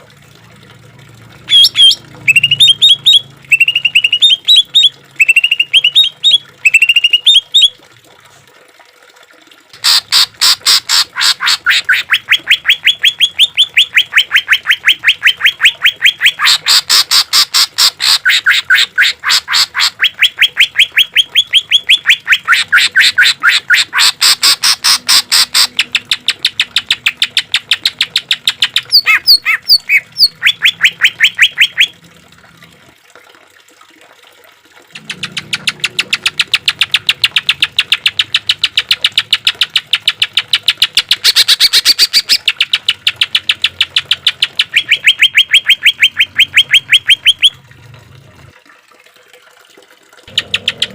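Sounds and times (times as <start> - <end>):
bird song with rapid repeated notes: 1.5 - 7.7, 11.6 - 16.7, 25.0 - 31.9, 35.1 - 47.6.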